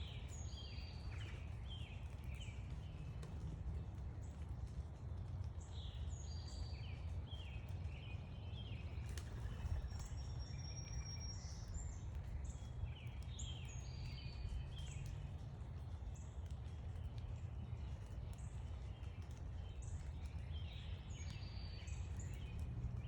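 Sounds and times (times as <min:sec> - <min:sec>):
low background rumble: 0:00.0 - 0:23.0
songbirds chirping: 0:00.0 - 0:23.0.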